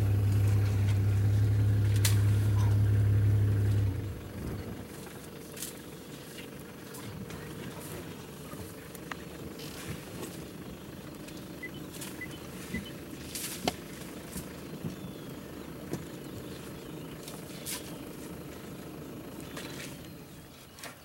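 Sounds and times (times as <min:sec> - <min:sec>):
engine idling: 0:00.0 - 0:21.0
faint bird chirps: 0:10.8 - 0:13.1, 0:14.5 - 0:21.0.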